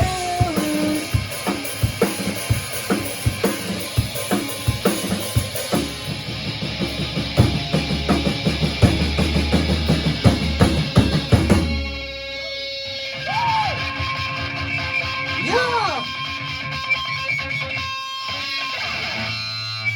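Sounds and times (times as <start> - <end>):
drum kit beat: 0.0 - 12.0, 15.3 - 16.2.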